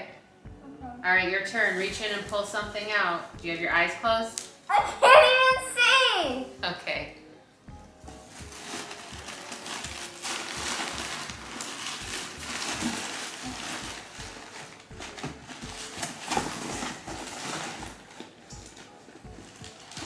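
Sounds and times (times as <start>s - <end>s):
packaging rustling and crinkling: 8.2s - 20.0s.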